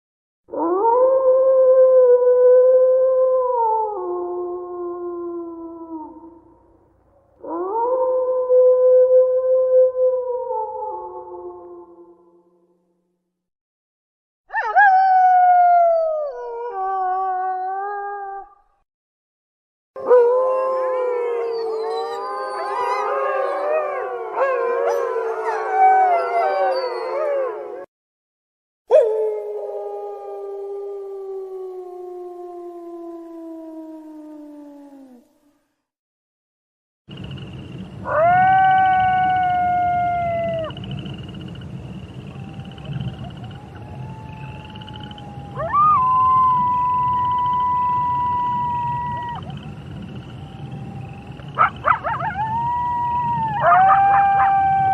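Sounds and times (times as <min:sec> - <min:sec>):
wolf pack howling: 0:20.0 - 0:27.9, 0:42.4 - 0:54.9.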